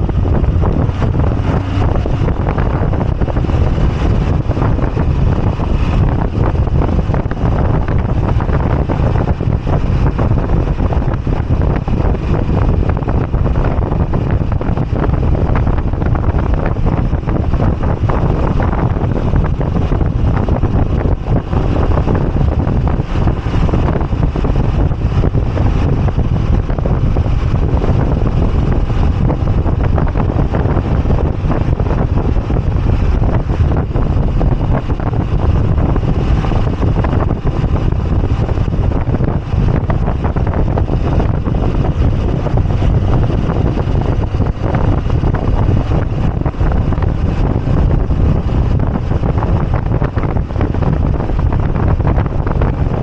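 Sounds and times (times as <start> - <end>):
motorcycle engine rumble: 0.0 - 53.0
wind buffeting microphone: 0.0 - 53.0.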